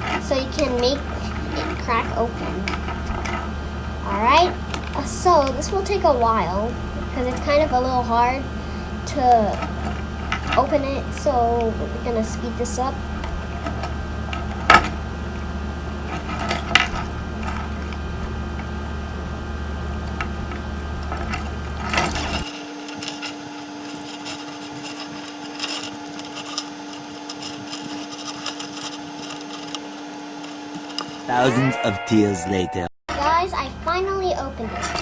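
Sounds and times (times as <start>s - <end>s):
steady low hum: 0.0s - 31.8s
tool scraping plastic: 21.5s - 31.4s, 34.7s - 35.0s.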